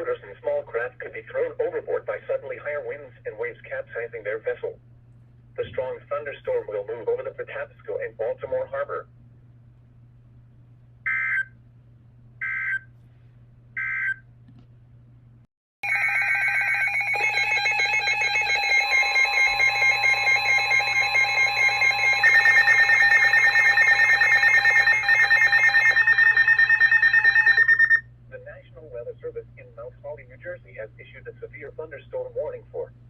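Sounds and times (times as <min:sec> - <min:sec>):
pulsing alert alarm: 0:15.8 - 0:28.0.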